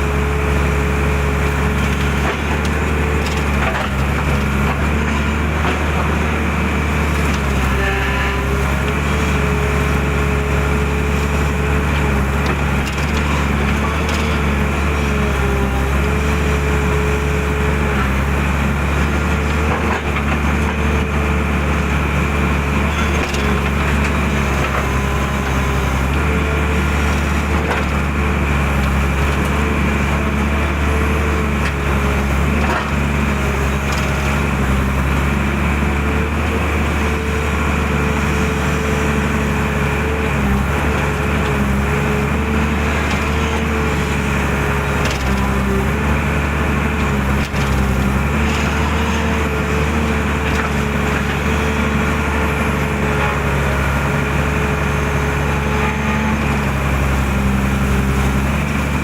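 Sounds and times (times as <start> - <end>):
hydraulic whine: 0.0 - 20.6
diesel engine running: 0.0 - 59.0.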